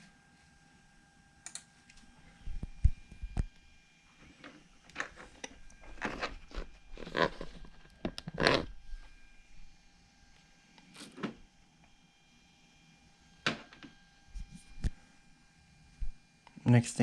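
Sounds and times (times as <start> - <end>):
handling rustles and scrapes: 4.1 - 9.7, 10.8 - 11.4.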